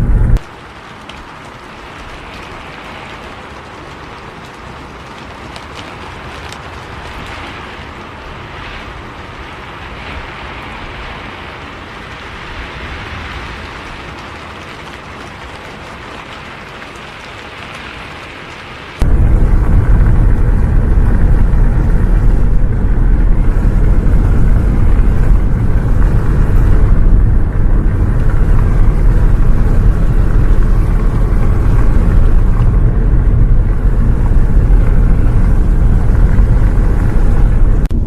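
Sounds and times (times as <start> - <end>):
bus rumbling on the road: 0.0 - 0.4, 19.0 - 38.0
rain hissing on a bus: 0.0 - 38.0
raindrop ticks: 0.0 - 38.0.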